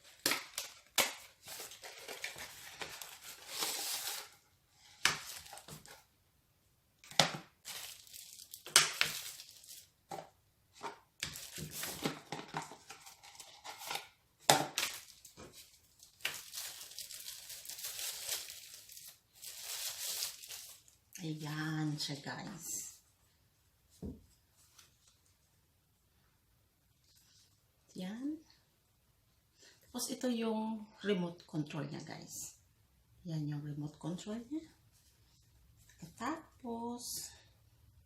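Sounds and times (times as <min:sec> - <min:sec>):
packaging crinkling and tearing: 0:00.0 - 0:04.4, 0:05.2 - 0:06.0, 0:07.0 - 0:09.9, 0:11.2 - 0:14.1, 0:14.7 - 0:21.0.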